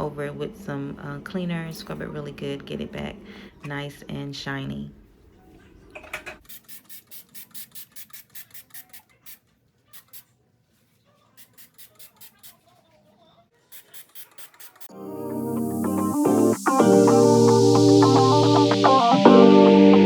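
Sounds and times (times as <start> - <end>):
music: 14.9 - 20.0.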